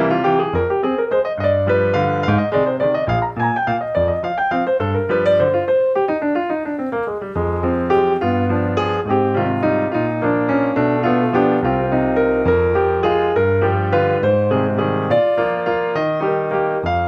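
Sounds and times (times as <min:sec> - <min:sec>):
piano music: 0:00.0 - 0:17.0.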